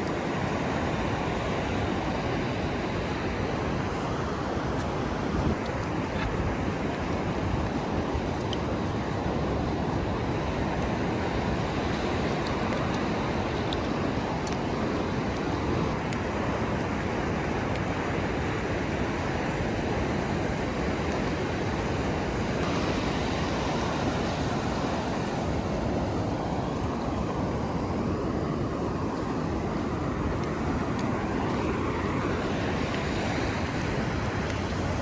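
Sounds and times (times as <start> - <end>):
ocean surf rushing: 0.0 - 35.0
wind noise on microphone: 0.0 - 35.0.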